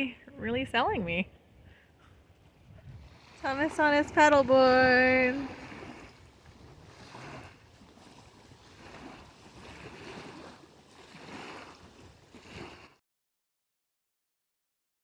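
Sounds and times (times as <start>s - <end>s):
lake water splashing: 1.7s - 13.0s.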